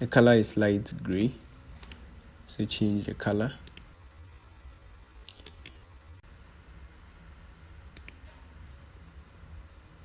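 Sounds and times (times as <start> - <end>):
low steady hum: 0.0 - 10.0
computer mouse clicks: 1.1 - 2.1, 3.6 - 3.9, 5.2 - 5.8, 7.9 - 8.3.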